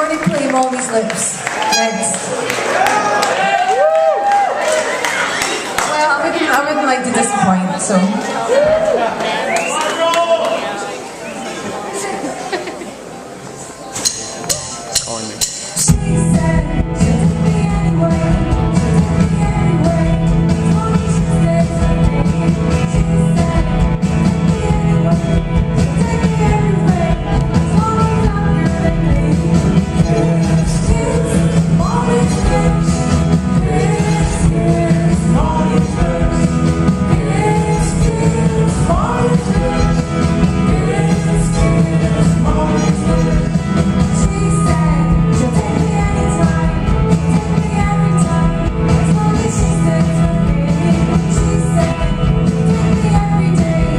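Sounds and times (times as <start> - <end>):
live rock band playing: 13.9 - 53.9
person singing: 15.8 - 53.9
sung vocals: 15.8 - 53.9.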